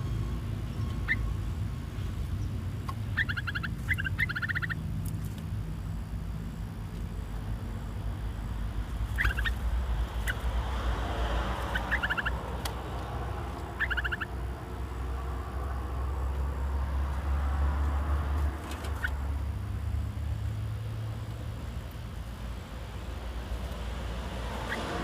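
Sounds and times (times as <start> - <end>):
bulbuls chattering: 11.6 - 14.9.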